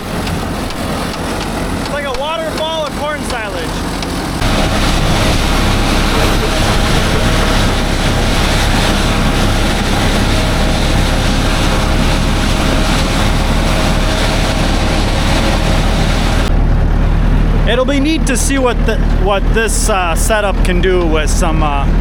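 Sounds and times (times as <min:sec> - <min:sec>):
tractor engine drone: 0:00.0 - 0:22.0.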